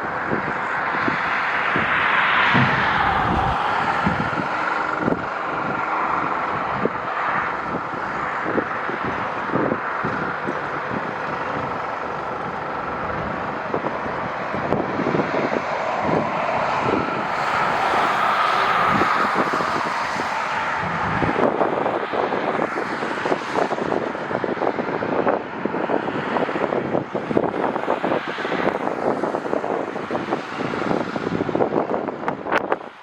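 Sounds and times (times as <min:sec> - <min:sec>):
jet engines rushing past: 0:00.0 - 0:23.2
wind buffeting microphone: 0:00.0 - 0:33.0.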